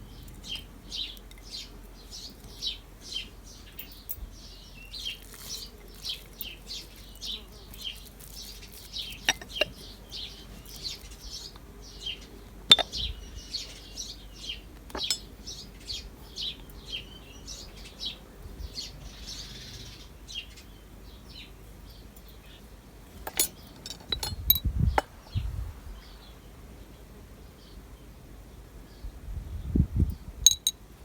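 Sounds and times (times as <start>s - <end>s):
small birds chirping: 0.0s - 30.8s
sharp clinks: 14.9s - 15.3s, 23.2s - 25.1s, 30.5s - 30.8s.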